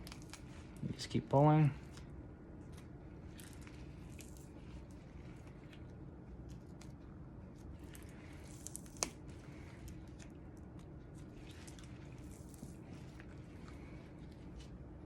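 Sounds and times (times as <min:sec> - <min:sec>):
small crackles: 0:00.0 - 0:00.9, 0:01.8 - 0:15.0
wet squishing of hide pulled: 0:07.7 - 0:14.8.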